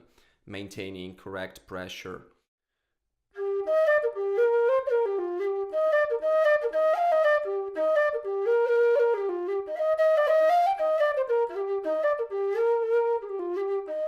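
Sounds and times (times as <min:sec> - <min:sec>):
low whistle melody: 0:03.3 - 0:14.0.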